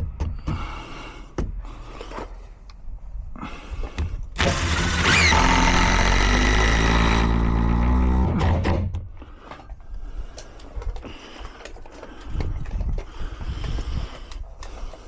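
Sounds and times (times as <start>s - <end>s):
power drill driving screw: 4.4s - 8.9s.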